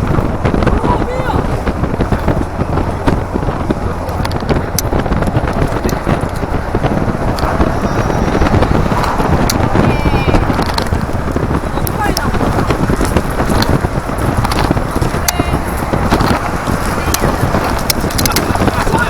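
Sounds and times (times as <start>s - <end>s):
wind and road noise: 0.0s - 19.0s
wind buffeting microphone: 0.0s - 19.0s.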